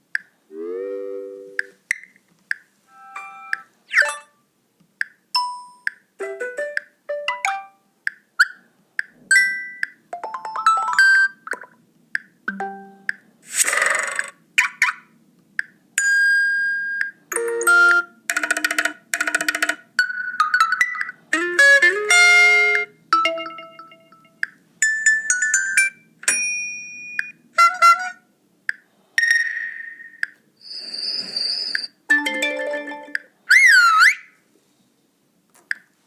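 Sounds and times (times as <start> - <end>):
phone ringtones and alert tones: 0.6 - 1.8, 2.9 - 4.4, 5.4 - 7.8, 9.3 - 11.7, 12.5 - 13.1, 17.3 - 26.0, 32.1 - 33.3.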